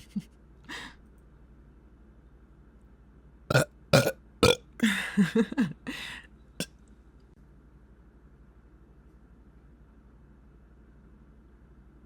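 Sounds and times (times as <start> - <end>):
woman burping: 3.5 - 5.0.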